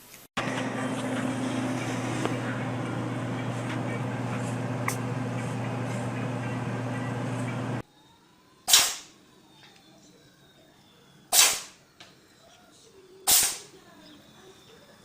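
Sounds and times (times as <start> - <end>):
low hum and hiss: 0.4 - 7.8
cat sneezing: 13.3 - 13.6.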